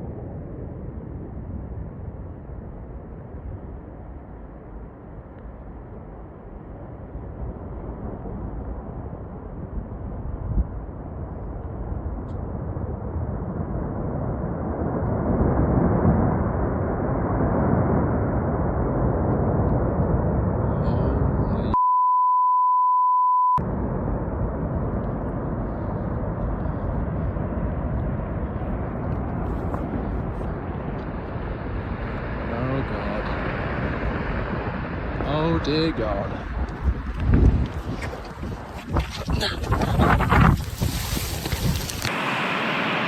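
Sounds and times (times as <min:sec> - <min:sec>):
rushing storm noise: 0:00.0 - 0:21.8, 0:23.6 - 0:43.0
censor bleep: 0:21.8 - 0:23.6.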